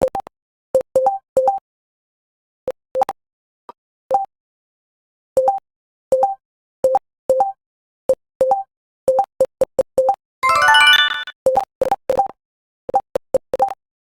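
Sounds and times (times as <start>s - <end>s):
two-tone keystroke blips: 10.4s - 11.3s.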